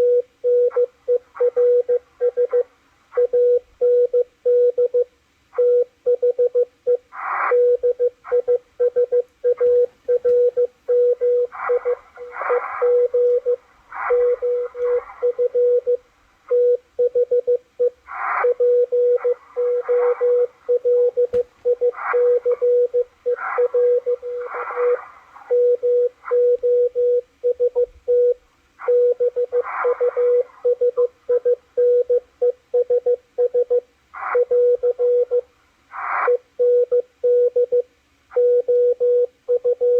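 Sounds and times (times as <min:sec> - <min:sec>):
morse code beeping: 0:00.0 - 0:33.8
bursts of high-pitched noise: 0:11.1 - 0:15.9, 0:18.0 - 0:25.6, 0:28.8 - 0:31.1.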